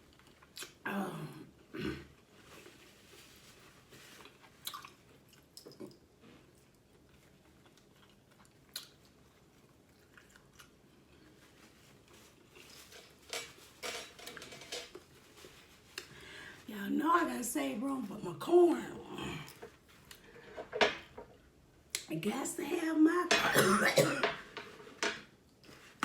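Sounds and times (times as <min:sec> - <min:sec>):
person chewing food: 0:00.0 - 0:00.8, 0:04.2 - 0:12.7.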